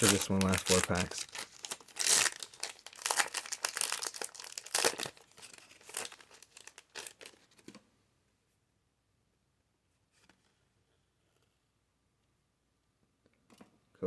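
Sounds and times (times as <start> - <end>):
foil wrapper crinkling and tearing: 0.0 - 7.6.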